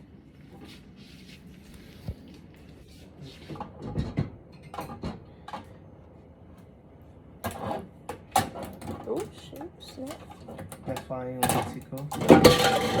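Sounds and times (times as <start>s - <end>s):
objects knocking and clattering: 3.6s - 5.7s, 7.4s - 13.0s.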